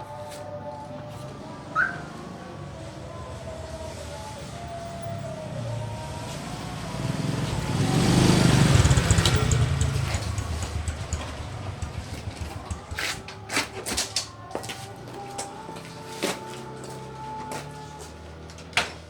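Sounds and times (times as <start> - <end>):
vehicle engine passing by: 0.0 - 13.4.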